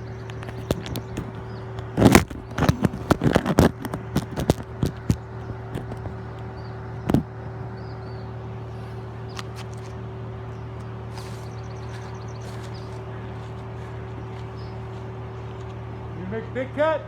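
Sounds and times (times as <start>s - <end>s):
engine hum: 0.0s - 17.0s
sharp cracks and knocks: 0.2s - 7.4s.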